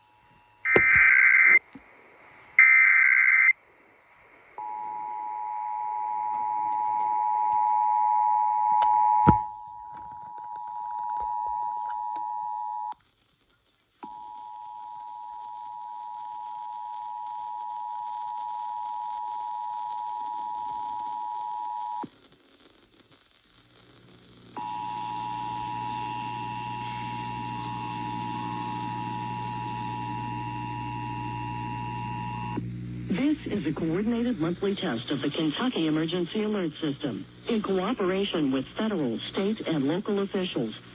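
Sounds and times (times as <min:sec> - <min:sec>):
data tone bursts: 0:00.0 - 0:01.7, 0:02.5 - 0:03.6, 0:24.6 - 0:32.6
low hum: 0:23.8 - 0:39.4.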